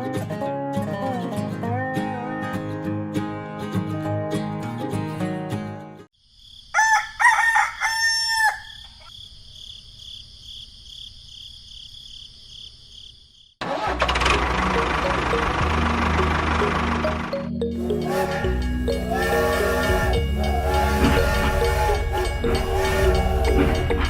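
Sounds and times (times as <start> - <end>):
guitar music: 0.0 - 6.1, 13.7 - 24.0
rooster crowing: 6.7 - 9.1, 18.0 - 23.9.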